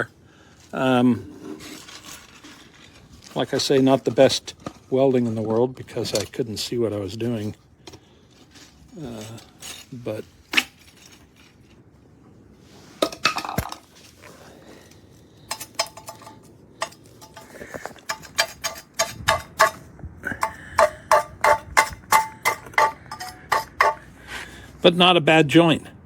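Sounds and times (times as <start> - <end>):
chipping hammer clinking on metal: 15.5 - 24.0.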